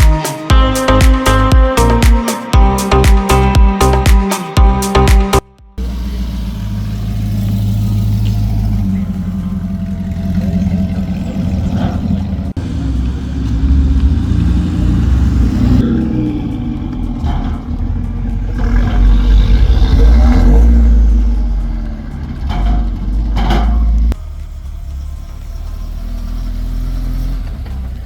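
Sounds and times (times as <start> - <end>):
car engine revving: 5.8 - 28.0.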